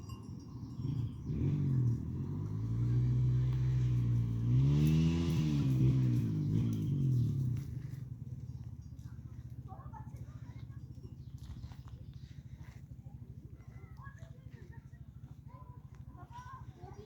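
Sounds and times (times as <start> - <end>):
vehicle engine revving: 0.6 - 9.6.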